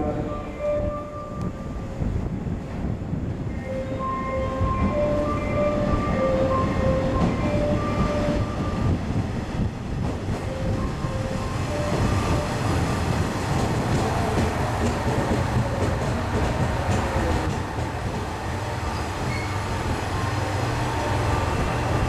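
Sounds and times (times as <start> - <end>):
train rumbling: 0.0 - 22.0
train wheels squealing on rails: 10.4 - 22.0.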